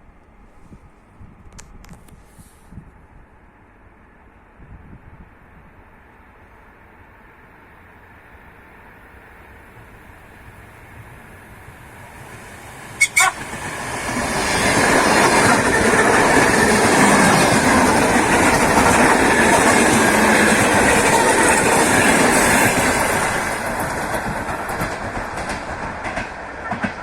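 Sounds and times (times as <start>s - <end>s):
train wheels clicking over rails: 11.7s - 27.0s
train horn toots: 13.0s - 13.5s.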